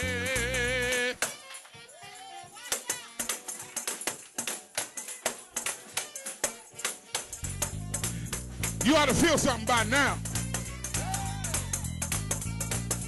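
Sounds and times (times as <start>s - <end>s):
tambourine jingling: 0.0s - 13.0s.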